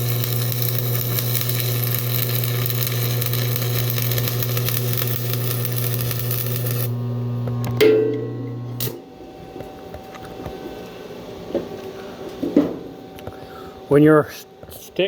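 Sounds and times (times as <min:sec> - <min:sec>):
welding arc crackling: 0:00.0 - 0:07.8, 0:08.5 - 0:09.0
steady low hum: 0:00.0 - 0:15.0.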